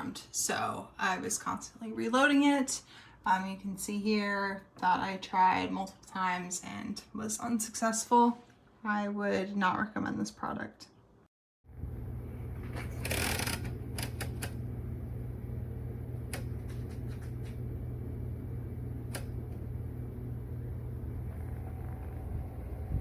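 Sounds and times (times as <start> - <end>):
steady low hum: 11.7 - 23.0.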